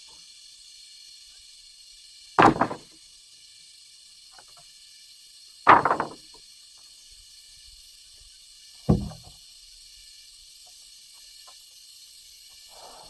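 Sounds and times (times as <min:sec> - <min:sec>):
heavy thuds: 0:02.4 - 0:02.8, 0:05.7 - 0:06.2, 0:08.9 - 0:09.3
short quick rattle: 0:02.4 - 0:02.8, 0:05.7 - 0:06.2
steady high hiss: 0:10.7 - 0:13.0.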